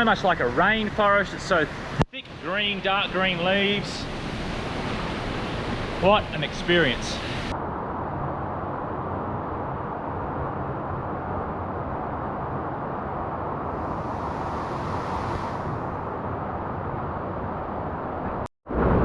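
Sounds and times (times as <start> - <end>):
waterfall rushing: 3.3 - 7.5.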